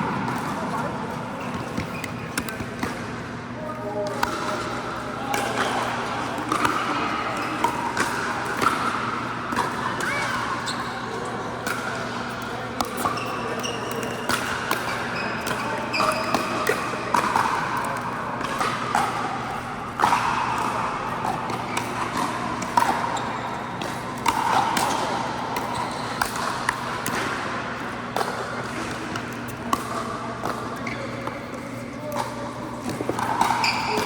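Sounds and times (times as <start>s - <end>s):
sneaker squeaks on court floor: 0.5s - 2.9s, 10.0s - 11.4s, 12.2s - 14.3s, 14.9s - 16.6s, 25.6s - 26.3s, 30.8s - 31.8s, 33.5s - 34.0s.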